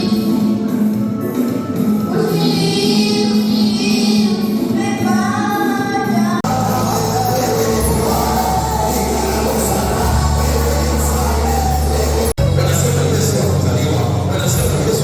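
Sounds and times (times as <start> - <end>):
music with singing voices: 0.0 - 15.0
music with heavy bass: 6.4 - 15.0.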